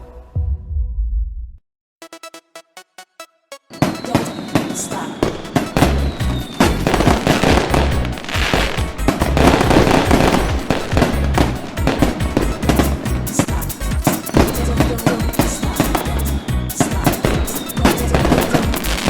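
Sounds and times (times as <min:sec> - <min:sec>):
falling whistle: 0:03.5 - 0:07.8, 0:16.7 - 0:19.0
fireworks banging and crackling: 0:03.7 - 0:19.0
music with heavy thumps: 0:05.6 - 0:19.0.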